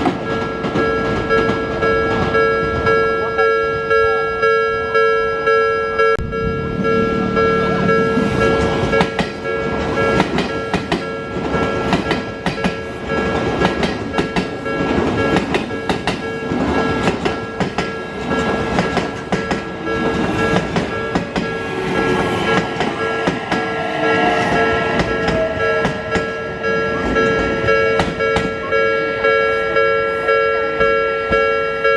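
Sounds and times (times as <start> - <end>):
train wheels clacking over rail joints: 0.0 - 2.3, 8.5 - 28.6
level crossing warning bell: 0.0 - 31.9
rumble of train cars: 0.0 - 31.9.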